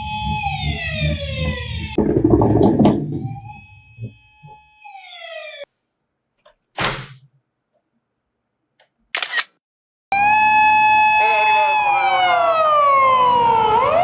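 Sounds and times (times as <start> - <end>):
siren tone gliding down: 0.0 - 2.0.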